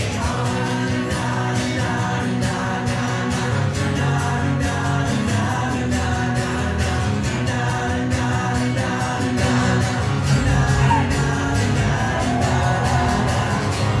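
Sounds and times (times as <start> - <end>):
person singing: 0.0 - 14.0
live rock band playing: 6.4 - 14.0.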